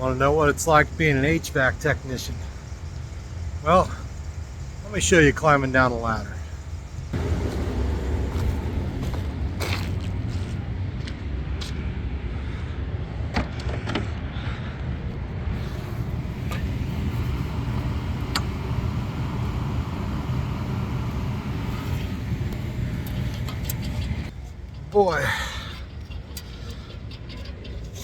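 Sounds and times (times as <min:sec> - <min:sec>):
low rumble: 0:07.1 - 0:12.7.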